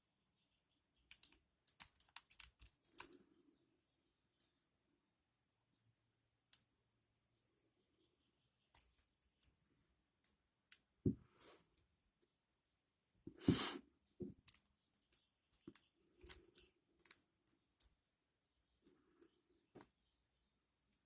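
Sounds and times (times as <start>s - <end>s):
lock pick clicking and scraping: 1.1s - 3.2s, 15.6s - 17.2s.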